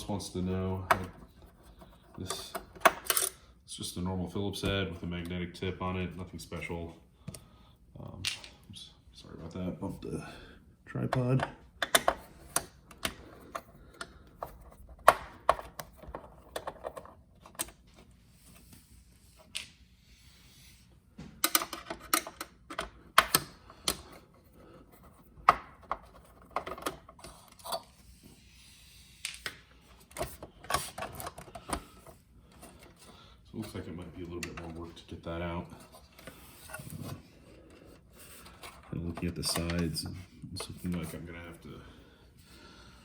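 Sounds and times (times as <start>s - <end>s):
screwdriver and parts clattering: 0.8s - 3.4s, 11.1s - 18.0s, 21.4s - 24.2s, 25.0s - 28.0s, 29.3s - 35.0s, 35.8s - 41.1s.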